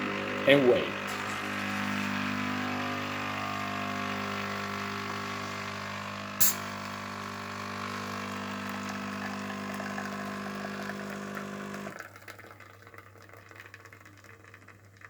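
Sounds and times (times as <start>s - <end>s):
coffee machine pump buzzing: 0.0s - 12.2s
sharp click: 6.4s - 6.7s.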